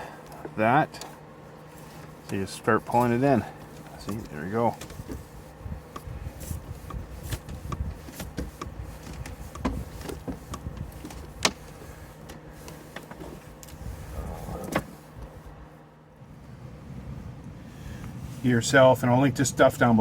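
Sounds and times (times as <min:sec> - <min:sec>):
hands handling parts: 0:00.0 - 0:13.9
faint steady hum: 0:00.0 - 0:20.0.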